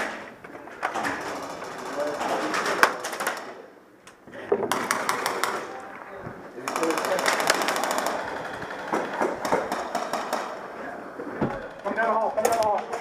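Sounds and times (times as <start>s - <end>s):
indistinct voices: 0.6s - 13.0s
airsoft guns firing: 4.7s - 5.8s, 6.6s - 10.8s.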